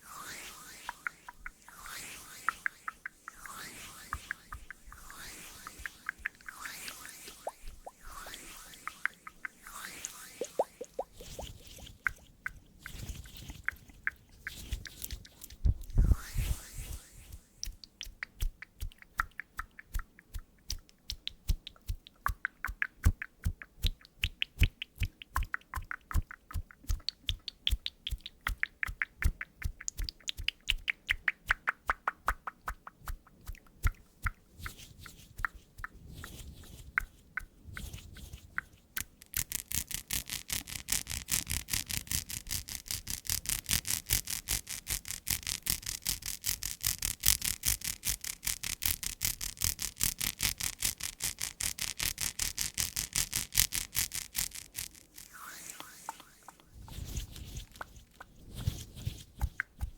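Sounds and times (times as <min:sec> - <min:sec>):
rustle: 0:00.0 - 0:17.6, 0:34.6 - 0:59.9.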